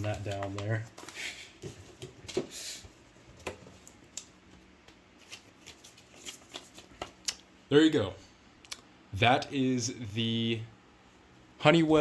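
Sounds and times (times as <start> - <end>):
cardboard rustling: 0.0 - 4.0.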